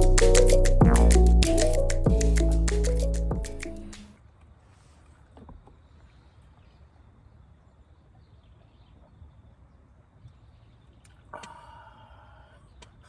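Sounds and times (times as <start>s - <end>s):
held note of background music: 0.0s - 4.0s
low steady rumble: 0.0s - 4.0s.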